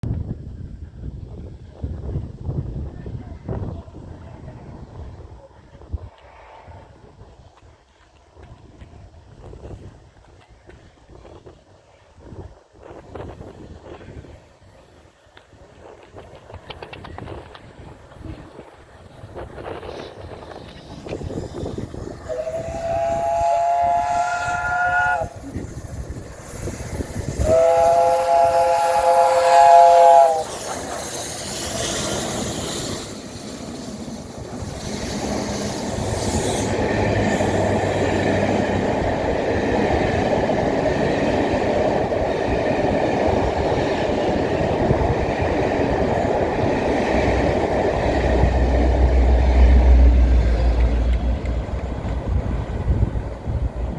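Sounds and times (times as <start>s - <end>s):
train wheels rumbling on rail: 0.0s - 53.9s
steam locomotive whistle: 22.2s - 25.5s, 27.3s - 30.9s.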